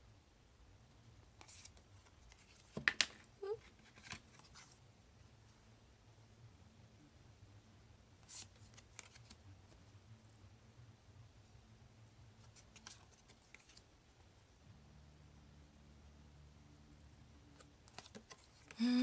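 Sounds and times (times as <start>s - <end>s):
low room hum: 0.0s - 19.0s
cards scraping and clicking: 1.4s - 4.8s, 8.2s - 9.4s, 12.4s - 13.8s, 17.6s - 18.8s.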